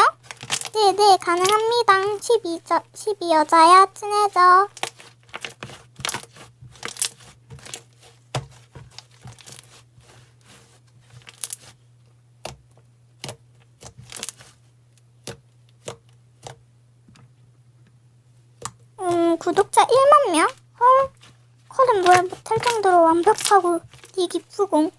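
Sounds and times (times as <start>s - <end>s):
crinkly tearing sounds: 0.0s - 2.3s, 4.6s - 8.2s, 8.9s - 11.8s, 13.8s - 14.6s, 21.2s - 24.5s.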